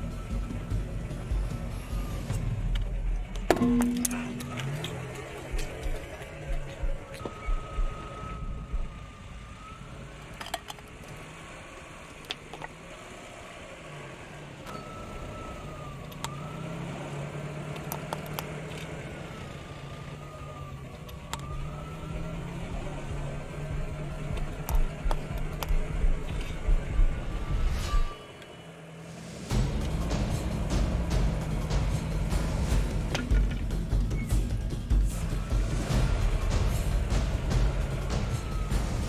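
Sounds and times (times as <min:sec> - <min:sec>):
siren wailing: 0:00.0 - 0:10.8, 0:14.6 - 0:29.0, 0:35.1 - 0:39.0
car engine running: 0:00.0 - 0:39.0.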